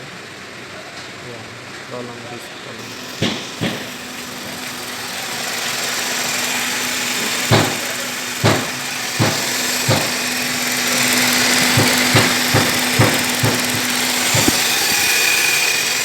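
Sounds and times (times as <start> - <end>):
car engine running: 2.8 - 16.0
sharp knocks: 3.1 - 4.0, 7.2 - 10.4, 11.5 - 15.2.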